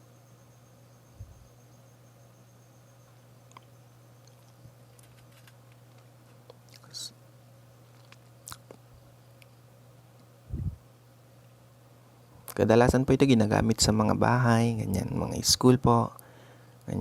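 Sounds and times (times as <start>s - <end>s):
steady low hum: 0.0s - 17.0s
handling clicks and rustle: 4.3s - 6.6s.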